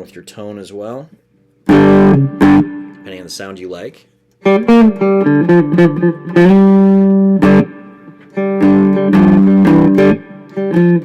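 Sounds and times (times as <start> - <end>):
amplified cigar box guitar: 1.7 - 3.2, 4.4 - 11.0.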